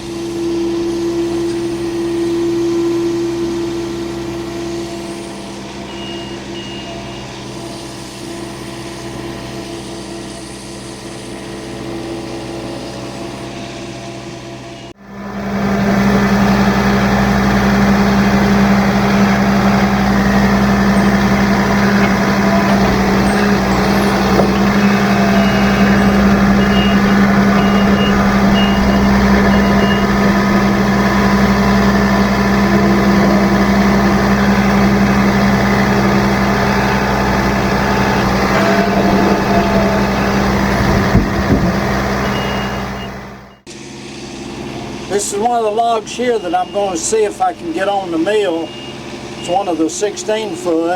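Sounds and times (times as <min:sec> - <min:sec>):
engine droning under load: 0:00.0 - 0:50.9
high beeps: 0:24.8 - 0:30.3.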